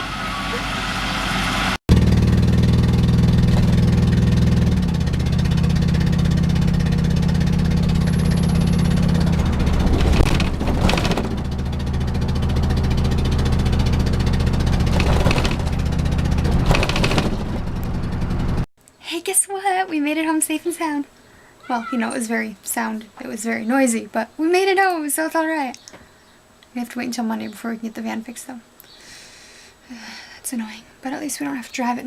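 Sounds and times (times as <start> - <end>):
van engine drone: 0.0 - 18.7.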